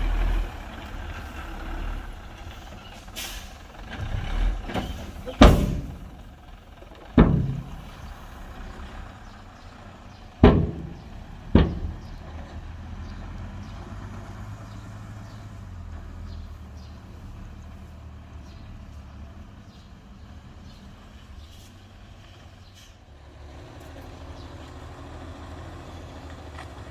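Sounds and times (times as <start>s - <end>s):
diesel machinery rumbling: 0.0s - 26.9s
loud sharp bangs: 5.3s - 6.2s, 7.2s - 8.0s, 10.4s - 12.2s.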